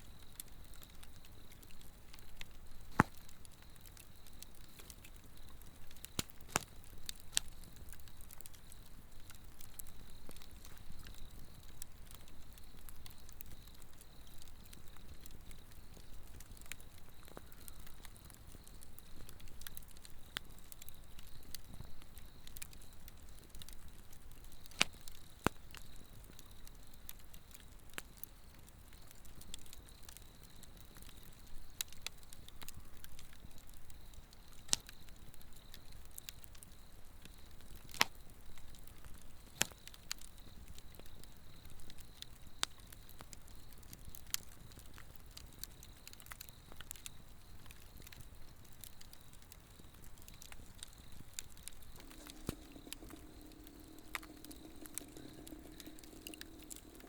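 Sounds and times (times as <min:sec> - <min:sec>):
burning log crackling and popping: 0:00.0 - 0:57.0
high insect trill: 0:50.9 - 0:57.0.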